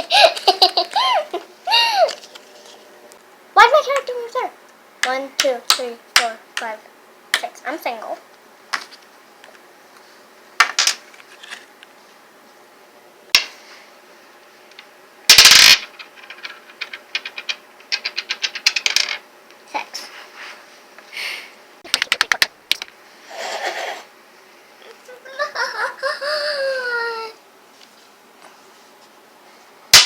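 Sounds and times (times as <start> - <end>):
plastic game pieces clicking: 21.9 - 22.9.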